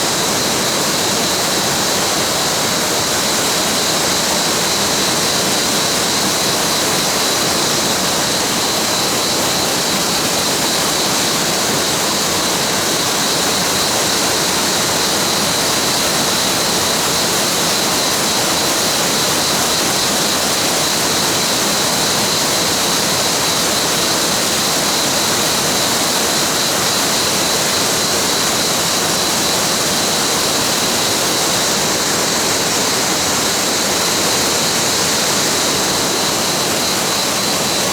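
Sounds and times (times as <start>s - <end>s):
waterfall rushing: 23.2s - 37.9s.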